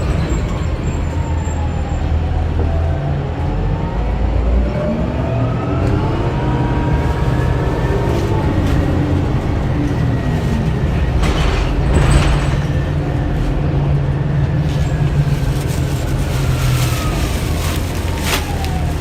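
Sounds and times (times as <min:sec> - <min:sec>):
bus diesel engine running: 0:00.0 - 0:19.0.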